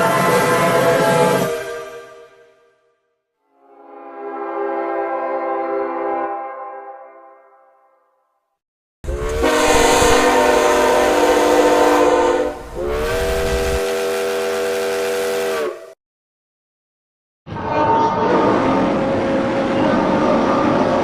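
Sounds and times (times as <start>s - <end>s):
steam locomotive chime whistle: 0.0s - 2.8s, 9.1s - 16.0s.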